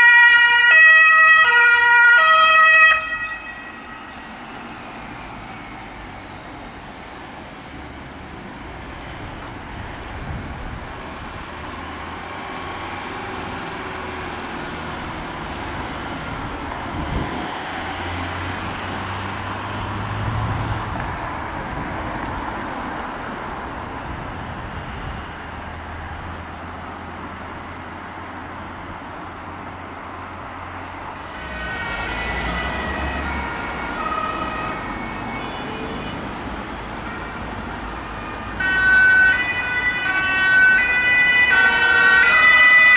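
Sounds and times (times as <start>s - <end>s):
two-tone emergency siren: 0.0s - 6.6s, 31.2s - 42.9s
vehicles passing: 0.0s - 42.9s.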